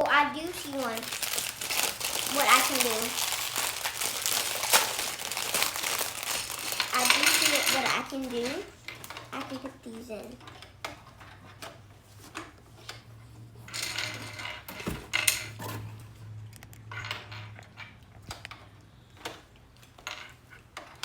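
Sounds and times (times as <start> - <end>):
batteries clinking into plastic toy: 0.4 - 9.7.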